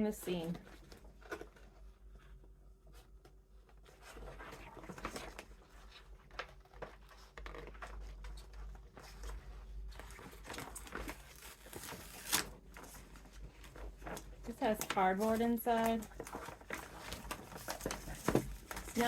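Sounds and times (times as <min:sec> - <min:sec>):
paper bag rustling: 0:04.0 - 0:19.0.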